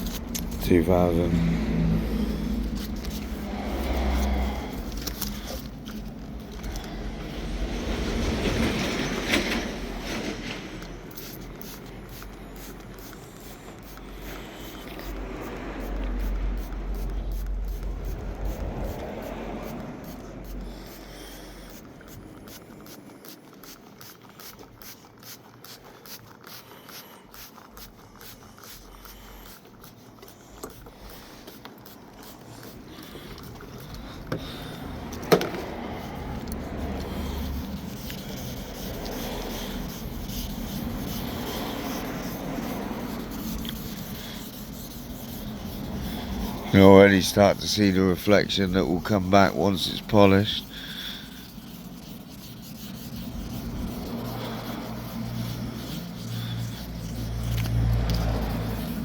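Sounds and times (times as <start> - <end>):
sandpaper rubbing on paint: 0.0 - 59.0.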